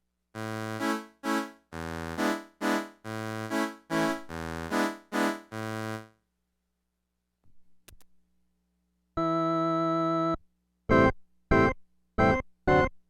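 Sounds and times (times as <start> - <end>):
portable keyboard notes and chords: 0.4 - 6.1.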